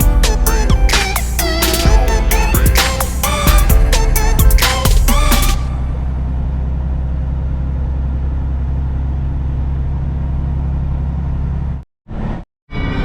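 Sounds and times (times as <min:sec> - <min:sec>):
truck engine drone: 0:00.0 - 0:11.6
road noise: 0:00.9 - 0:07.8.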